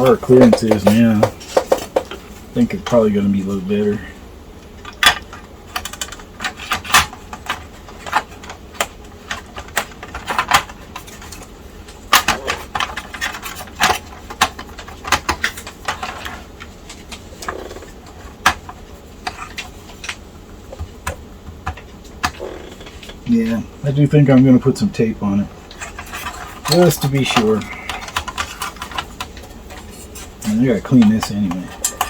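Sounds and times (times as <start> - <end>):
plastic parts clicking and tapping: 0.0 - 2.2, 4.7 - 23.2, 25.7 - 32.0.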